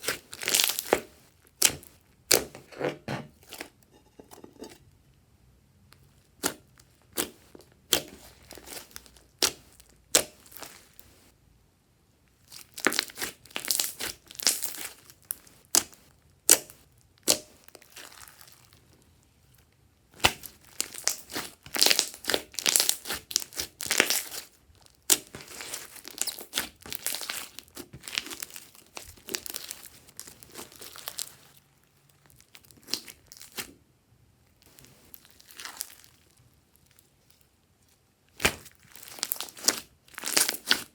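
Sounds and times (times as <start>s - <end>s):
slime crackling and popping: 0.0s - 2.5s, 6.4s - 11.0s, 12.5s - 18.8s, 20.2s - 31.6s, 32.3s - 33.7s, 38.3s - 40.9s.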